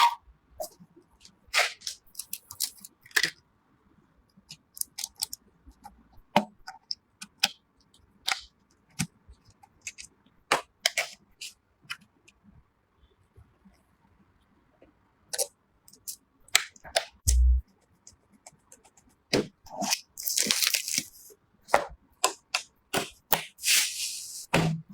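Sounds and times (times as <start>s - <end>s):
packaging rustling: 20.2s - 21.1s.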